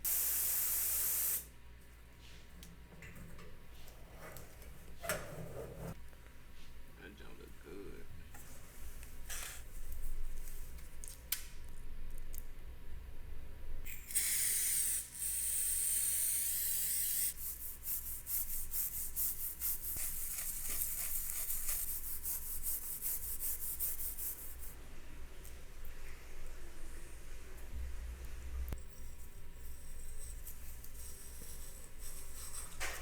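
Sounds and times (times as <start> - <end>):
spray hiss: 0.0 - 1.5.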